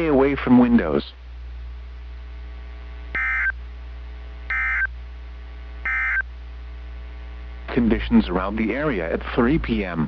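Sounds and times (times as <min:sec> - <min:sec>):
steady low hum: 0:00.0 - 0:10.0
buzzy digital data bursts: 0:03.2 - 0:03.5, 0:04.5 - 0:04.9.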